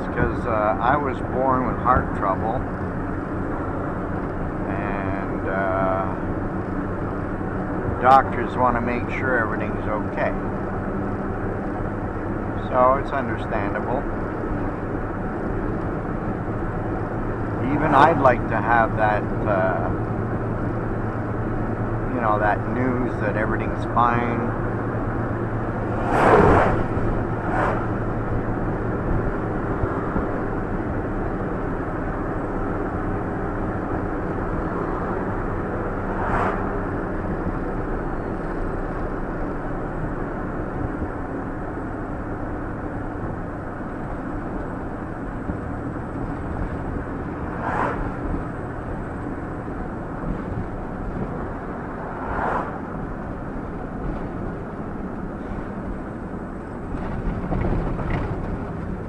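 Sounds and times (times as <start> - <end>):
van engine and road noise: 0.0 - 59.0
brief loud sounds: 26.0 - 26.8.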